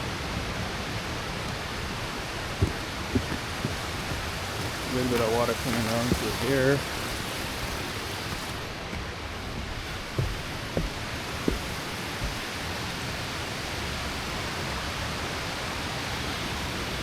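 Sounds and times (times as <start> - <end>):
mountain stream rushing: 0.0 - 17.0
soft low thumps: 1.4 - 6.4, 8.3 - 12.7.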